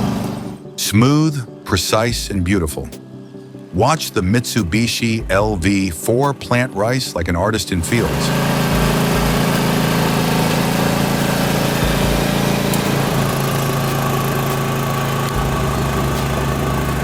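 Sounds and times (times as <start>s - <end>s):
small engine running: 7.8s - 17.0s.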